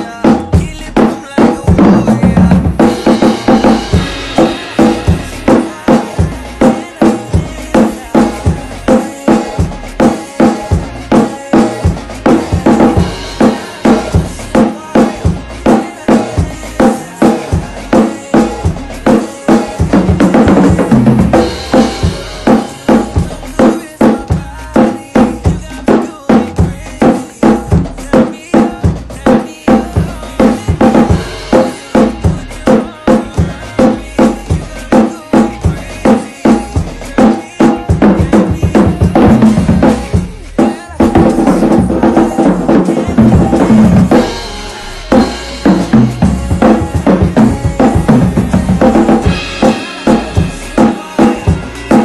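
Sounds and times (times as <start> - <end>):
drum kit playing a groove: 0.0 - 52.0
pop song backing track: 0.0 - 52.0.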